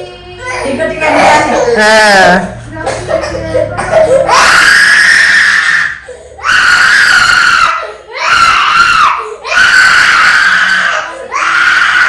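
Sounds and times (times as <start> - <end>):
baby crying: 3.1 - 12.0.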